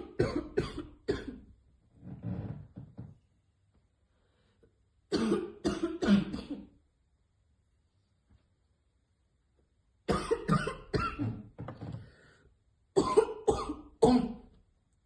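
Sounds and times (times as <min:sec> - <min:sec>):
woman coughing hard: 0:00.0 - 0:01.4, 0:05.1 - 0:06.7, 0:10.1 - 0:11.4, 0:13.0 - 0:14.5.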